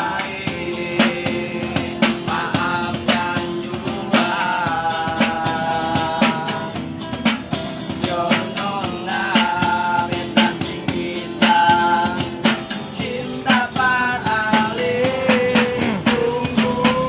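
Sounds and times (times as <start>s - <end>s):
person singing: 0.0s - 6.9s, 8.0s - 17.0s
steady drum beat: 0.0s - 17.0s
held melody line: 12.6s - 17.0s.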